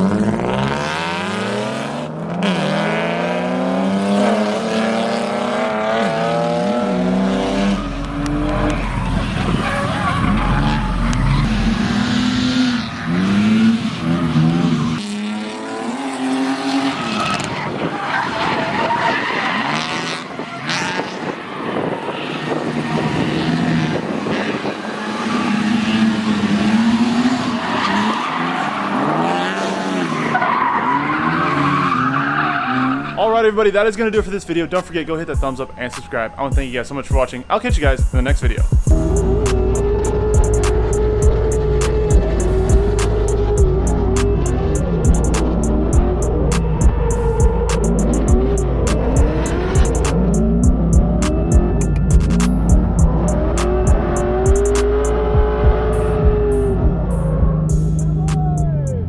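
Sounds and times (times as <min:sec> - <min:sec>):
car engine revving: 0:00.0 - 0:33.6, 0:38.8 - 0:59.0
tyres squealing: 0:07.4 - 0:15.0.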